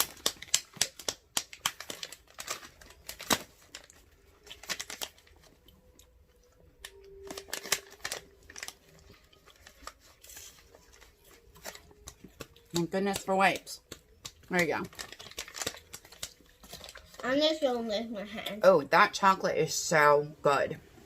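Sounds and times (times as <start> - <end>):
plastic packaging crinkling: 0.0 - 5.9, 6.8 - 17.6.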